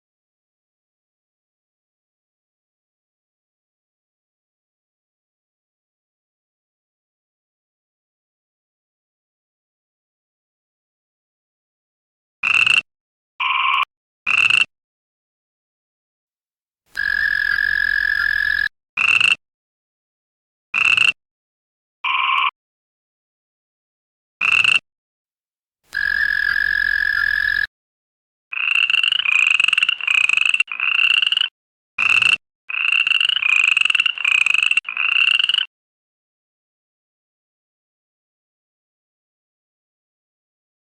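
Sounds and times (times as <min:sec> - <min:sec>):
toad croaking: 0:12.4 - 0:12.8, 0:16.9 - 0:19.4, 0:20.8 - 0:21.2, 0:22.0 - 0:22.5, 0:25.9 - 0:27.7, 0:28.5 - 0:35.7.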